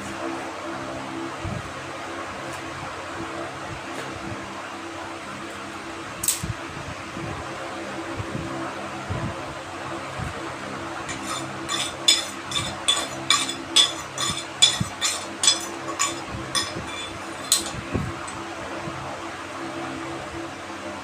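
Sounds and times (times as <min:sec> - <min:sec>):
steady low hum: 0:00.0 - 0:21.0
ringing clinks of hard objects: 0:11.1 - 0:18.4.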